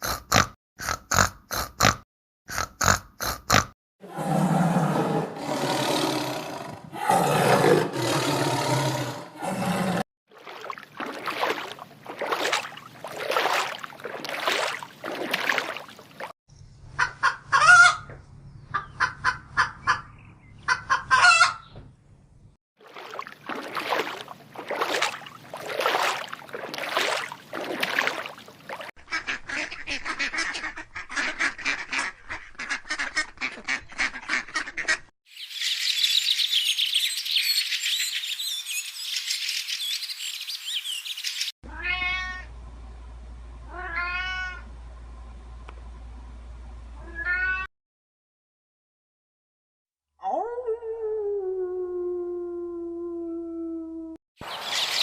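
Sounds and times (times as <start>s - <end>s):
farm animals calling: 18.7s - 21.7s
fowl honking: 20.7s - 21.6s.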